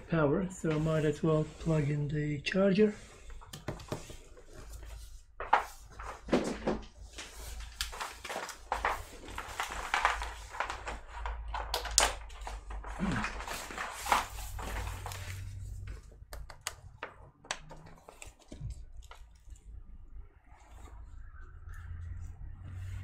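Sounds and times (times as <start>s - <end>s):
laptop plastic clicks and taps: 3.5s - 4.1s, 16.3s - 18.3s
hands rustling: 7.1s - 11.3s.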